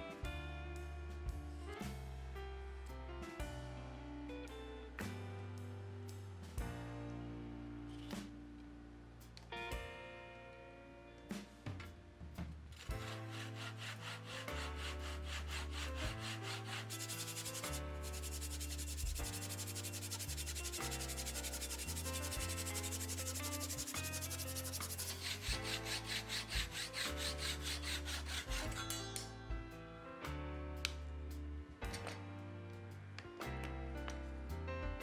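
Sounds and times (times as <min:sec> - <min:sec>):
wood being sanded: 0:12.8 - 0:28.8.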